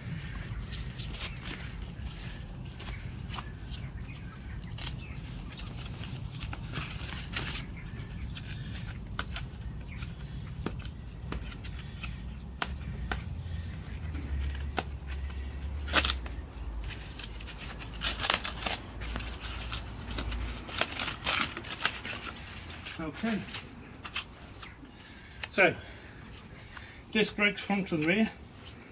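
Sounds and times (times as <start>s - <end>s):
plastic packaging being stripped: 0.7s - 5.4s, 6.3s - 12.2s, 14.2s - 24.7s.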